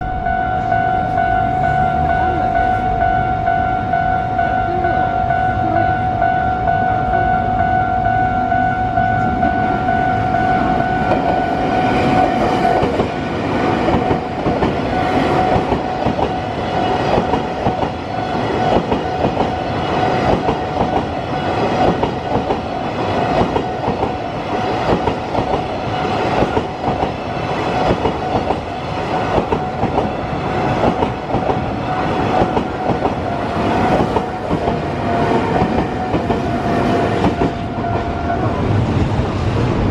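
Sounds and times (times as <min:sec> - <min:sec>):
crossing warning bell: 0:00.0 - 0:39.3
train wheels clattering: 0:10.9 - 0:37.9.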